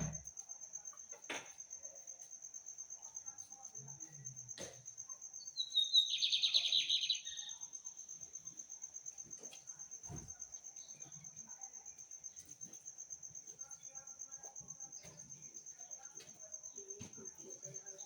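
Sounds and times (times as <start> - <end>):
insect high-pitched pulsing trill: 0.0 - 18.0
bird singing rapid notes: 5.4 - 7.7.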